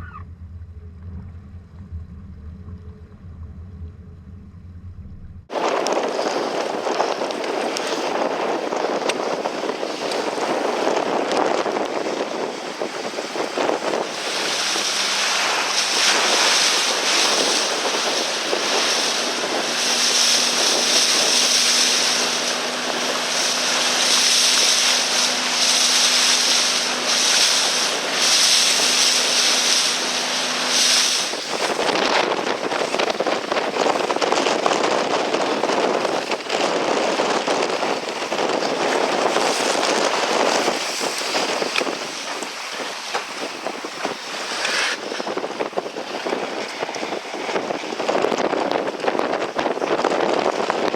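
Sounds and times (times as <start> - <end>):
faint low hum: 0.0 - 5.5
wind buffeting microphone: 0.0 - 50.9
water rushing and splashing: 5.4 - 50.9.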